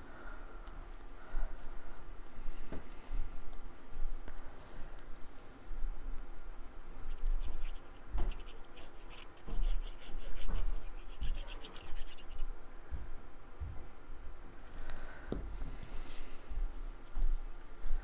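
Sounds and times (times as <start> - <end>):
hands rubbing on cardstock: 7.1 - 12.4.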